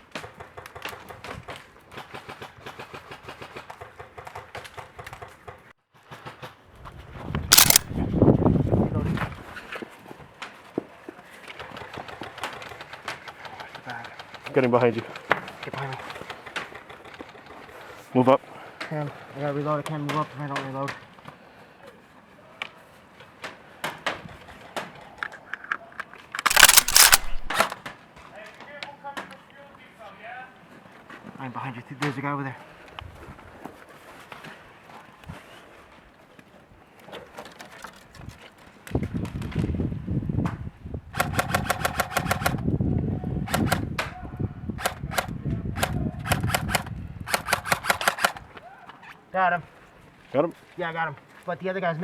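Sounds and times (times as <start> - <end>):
airsoft gun firing burst: 7.5 - 7.9, 26.4 - 27.6, 46.3 - 48.4
gun gear clicks and knocks: 7.5 - 7.9, 25.3 - 27.7.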